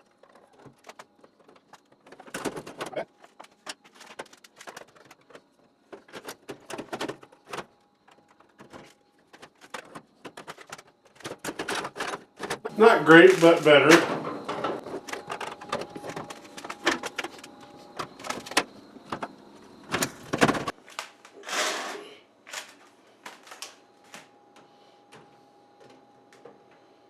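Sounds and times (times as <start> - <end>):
metal drawers clicking and rattling: 0.0 - 20.7
drawer sliding scrape: 21.4 - 22.1.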